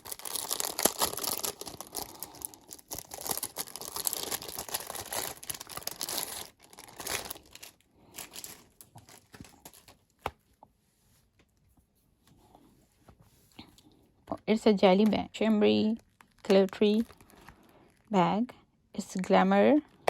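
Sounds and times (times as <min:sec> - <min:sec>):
packaging crinkling and tearing: 0:00.0 - 0:10.4, 0:15.7 - 0:18.1.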